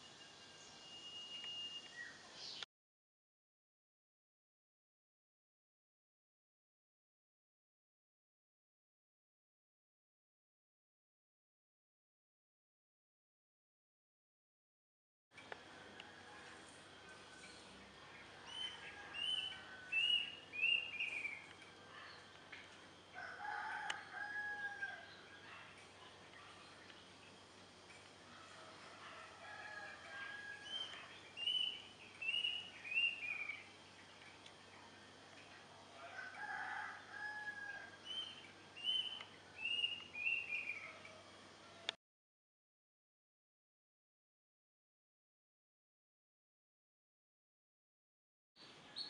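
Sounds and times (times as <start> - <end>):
faint steady hiss: 0.0 - 2.7, 15.4 - 42.0
rooster crowing: 18.5 - 20.8, 23.2 - 25.1, 28.3 - 31.0, 35.9 - 38.1.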